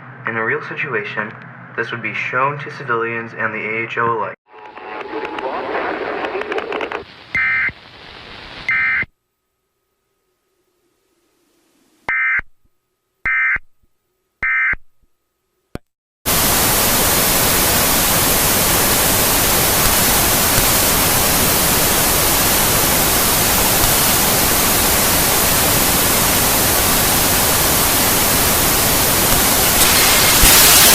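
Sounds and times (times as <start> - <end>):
white-noise static: 4.6 - 9.0, 16.3 - 30.9.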